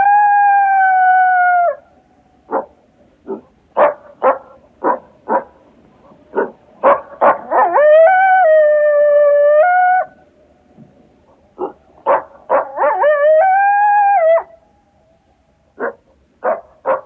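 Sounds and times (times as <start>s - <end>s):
coyote howling: 0.0s - 1.8s, 7.2s - 10.2s, 12.5s - 14.6s
coyote barking and yipping: 2.5s - 8.4s, 11.6s - 14.5s, 15.8s - 17.0s.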